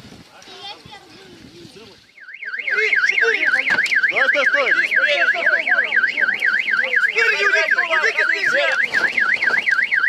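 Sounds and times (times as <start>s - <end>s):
electronic alarm siren wailing: 2.0s - 10.0s.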